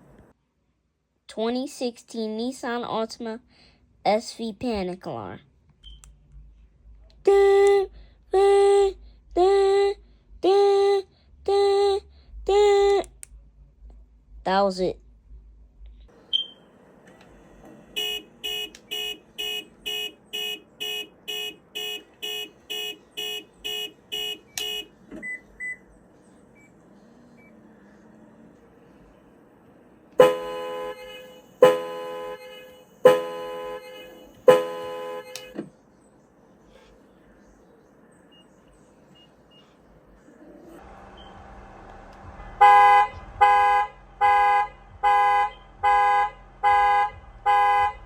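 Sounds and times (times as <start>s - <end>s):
car alarm electronic beeps: 5.8s - 6.1s, 16.3s - 16.6s, 18.0s - 25.9s, 38.2s - 39.8s
short chirps: 16.3s - 16.6s
car horn blasts: 17.9s - 25.0s, 30.2s - 35.7s, 40.8s - 48.0s.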